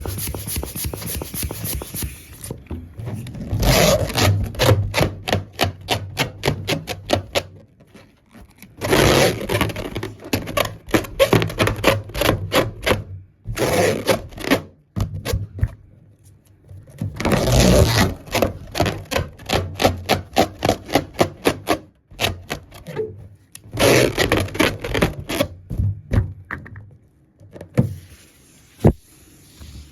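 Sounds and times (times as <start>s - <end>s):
rubber balloons rubbing: 0.0s - 7.0s, 17.2s - 22.6s, 23.7s - 25.7s.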